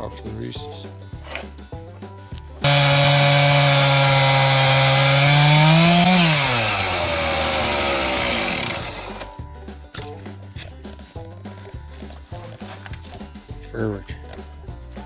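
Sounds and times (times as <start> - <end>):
chainsaw cutting through wood: 2.6 - 9.3.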